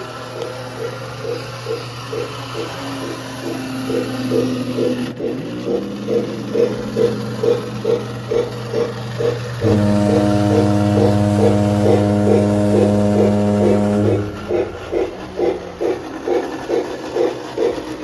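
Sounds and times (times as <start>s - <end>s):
model locomotive chuffing: 0.0s - 18.0s
multi-tone train whistle: 7.0s - 16.4s
low hum: 9.6s - 16.2s.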